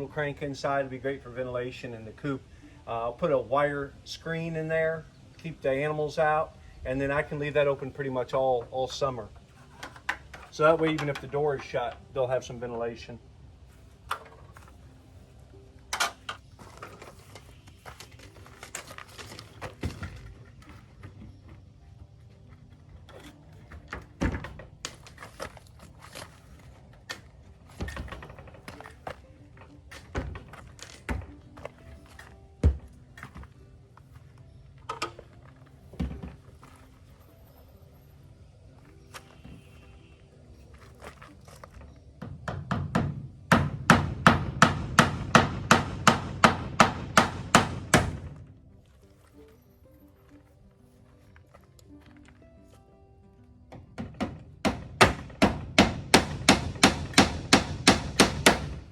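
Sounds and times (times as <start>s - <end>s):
knocks on wooden structure: 42.2s - 48.3s, 53.8s - 58.9s
hammer driving nail into wood: 42.4s - 48.3s, 54.0s - 58.8s.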